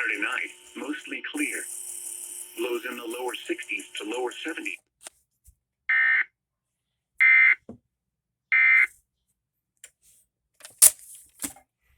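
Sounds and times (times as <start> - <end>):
buzzy digital tone bursts: 0.0 - 4.8.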